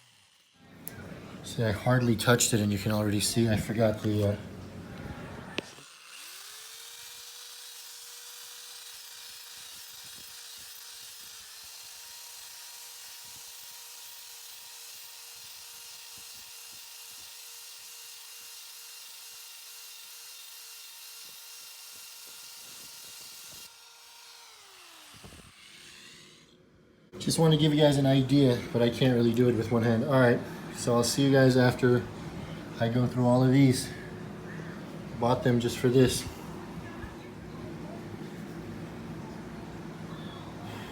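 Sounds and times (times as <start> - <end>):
electric drill whining: 0.0 - 1.1, 5.5 - 26.6.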